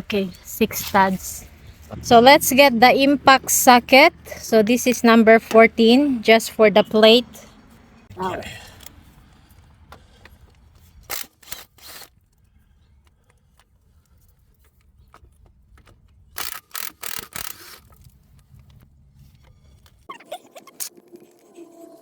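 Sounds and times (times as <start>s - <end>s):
low steady hum: 0.0s - 9.5s.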